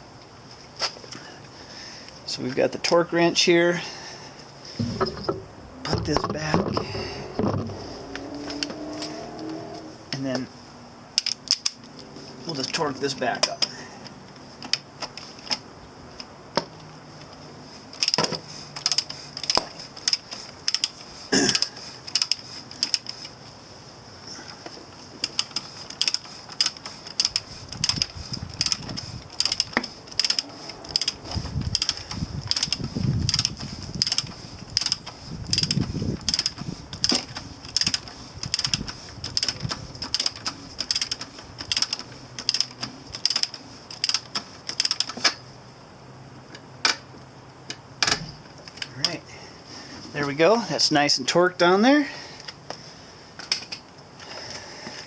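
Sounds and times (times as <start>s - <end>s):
low rumble: 4.8s - 6.2s
ratcheting torque wrench clicking: 11.2s - 11.8s, 17.9s - 23.4s, 25.2s - 45.4s.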